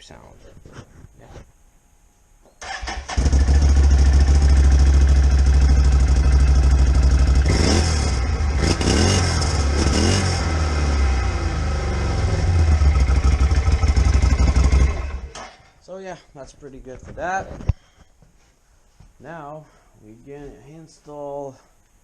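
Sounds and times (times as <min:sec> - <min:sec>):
engine starter cranking: 0:02.6 - 0:03.7
engine revving: 0:02.7 - 0:15.4
atv engine idling: 0:03.1 - 0:15.4.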